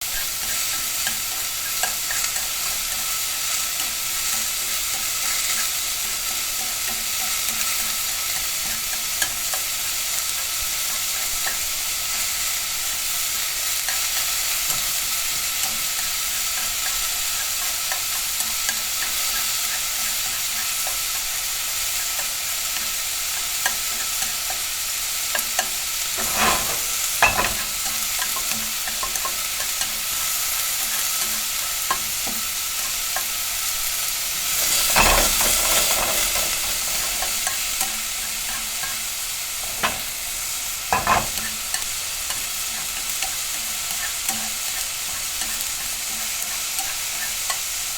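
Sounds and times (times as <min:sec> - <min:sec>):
vegetables sizzling in oil: 0:00.0 - 0:47.9
oil popping and crackling: 0:25.3 - 0:47.9.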